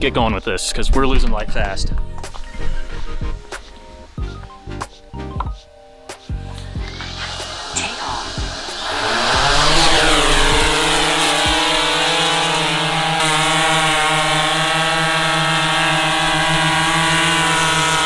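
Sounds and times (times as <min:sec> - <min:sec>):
drone propellers whirring: 0:06.7 - 0:18.0.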